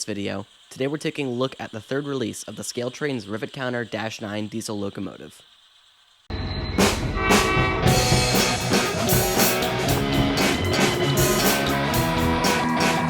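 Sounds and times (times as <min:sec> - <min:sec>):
drum kit beat: 0:06.7 - 0:13.0
electric guitar: 0:06.8 - 0:13.0.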